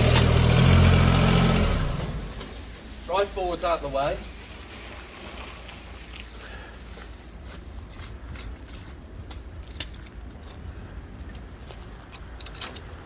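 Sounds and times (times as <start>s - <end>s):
tractor engine low rumble: 0.0s - 5.2s
light metallic clicks and rattles: 8.3s - 10.6s, 11.2s - 13.0s.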